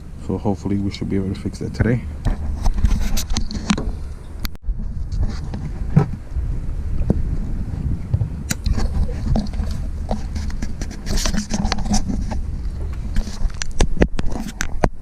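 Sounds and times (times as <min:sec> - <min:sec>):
steady low rumble: 0:00.0 - 0:14.2
plastic connectors clicking and scraping: 0:08.5 - 0:12.4.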